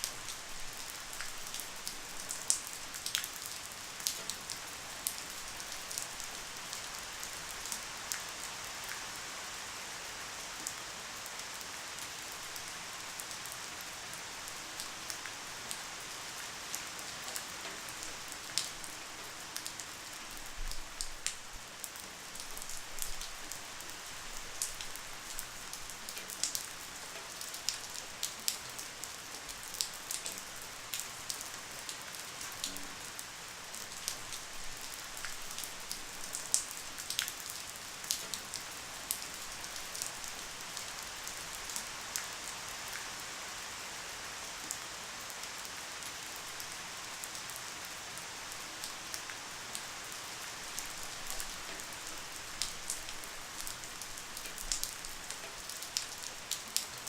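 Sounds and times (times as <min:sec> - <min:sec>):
light rain hiss: 0:00.0 - 0:57.0
raindrops tapping on a surface: 0:32.4 - 0:33.2, 0:33.9 - 0:40.1, 0:50.8 - 0:57.0.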